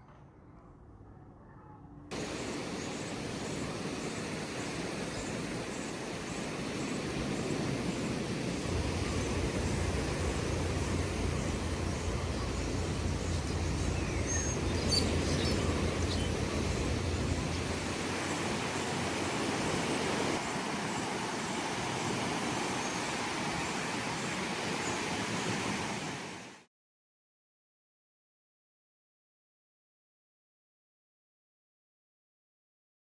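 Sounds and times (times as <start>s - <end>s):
even outdoor hiss: 2.1s - 26.7s.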